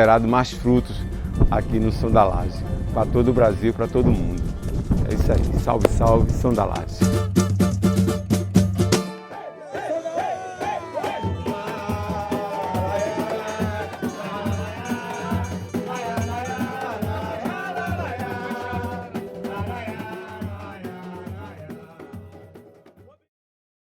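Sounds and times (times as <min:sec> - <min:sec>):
bass notes: 0:00.0 - 0:09.1
shaker and drum percussion: 0:09.8 - 0:23.1.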